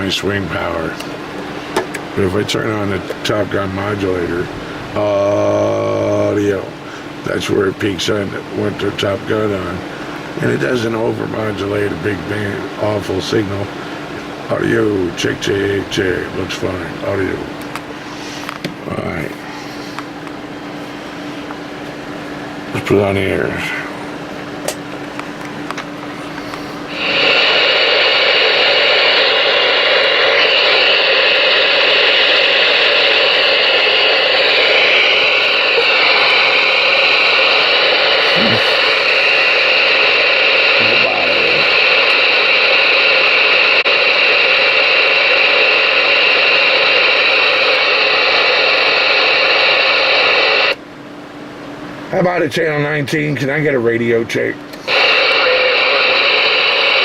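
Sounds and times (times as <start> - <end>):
radio static: 1.7 - 13.8, 14.5 - 17.6, 26.4 - 50.8, 52.3 - 57.0.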